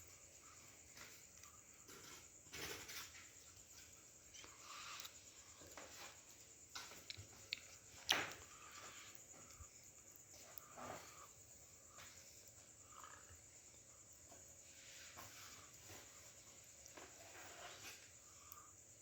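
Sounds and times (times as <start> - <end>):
rustling and knocking of objects: 0.0 - 12.8, 14.0 - 18.3.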